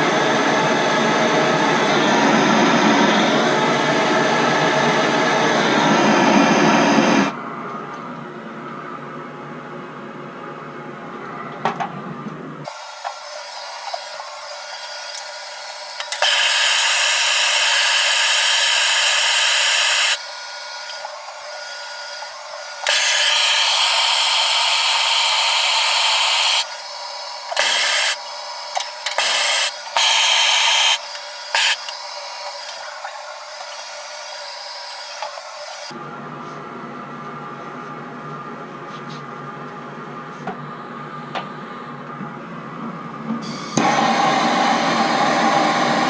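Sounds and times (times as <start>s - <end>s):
torch flame hissing: 12.7s - 35.9s.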